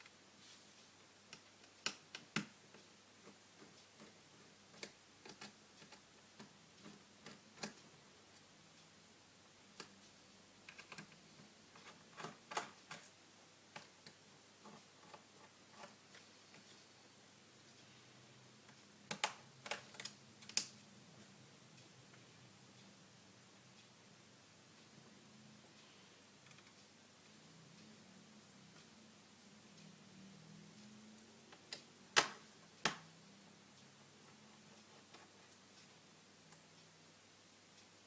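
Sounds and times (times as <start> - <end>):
small tools and plastic parts clicking: 4.7 - 7.9, 10.7 - 11.2.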